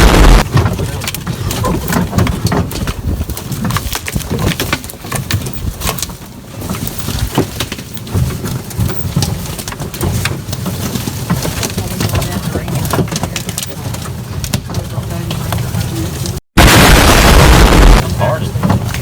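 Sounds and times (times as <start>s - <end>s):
vehicle knocking and rattling: 0.0s - 16.4s, 18.1s - 19.0s.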